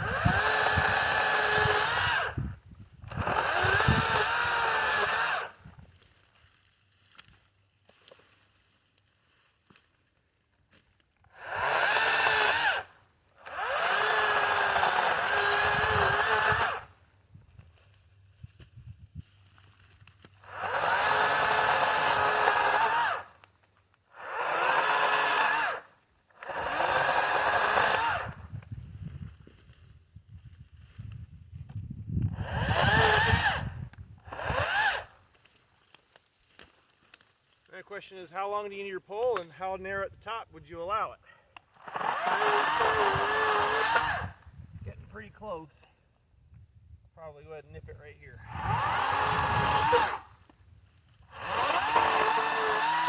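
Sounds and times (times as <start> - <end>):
battery chainsaw motor whine: 0.0 - 5.9, 11.2 - 18.8, 20.0 - 36.2, 41.6 - 45.9, 47.8 - 53.0.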